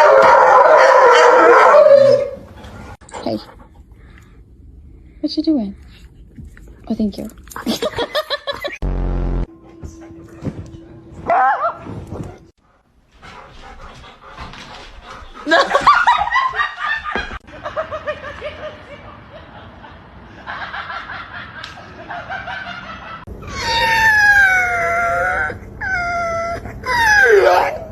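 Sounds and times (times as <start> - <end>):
dog howling: 0.0 - 2.5, 23.5 - 27.9
person laughing: 7.6 - 8.8.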